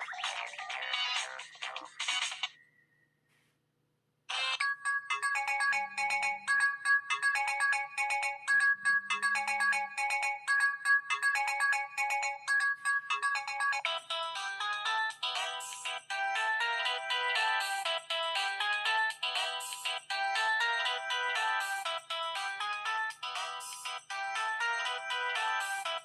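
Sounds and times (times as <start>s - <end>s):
electronic ringtone melody: 4.3s - 26.0s.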